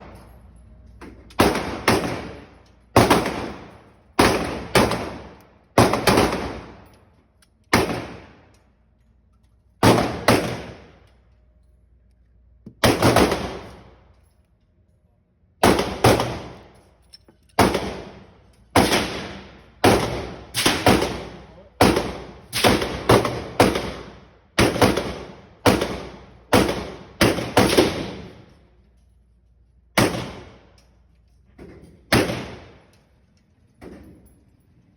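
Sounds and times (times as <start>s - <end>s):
pistol shots: 1.3s - 7.0s, 7.7s - 8.5s, 9.8s - 11.1s, 12.8s - 14.0s, 15.6s - 16.8s, 17.6s - 28.5s, 30.0s - 30.7s, 32.1s - 32.8s.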